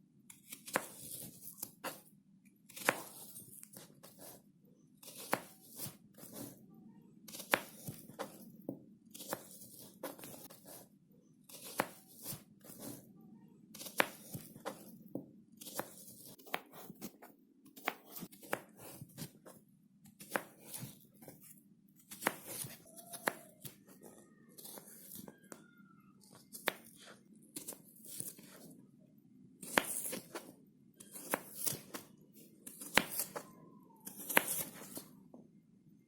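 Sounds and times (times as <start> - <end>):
knife cutting through melon: 0.4 - 2.0, 2.7 - 4.4, 5.0 - 6.6, 7.3 - 8.5, 9.1 - 10.9, 11.5 - 13.1, 13.8 - 15.0, 15.6 - 19.6, 20.2 - 21.5, 22.1 - 23.7, 24.6 - 25.3, 26.3 - 28.7, 29.6 - 33.4, 34.0 - 35.1.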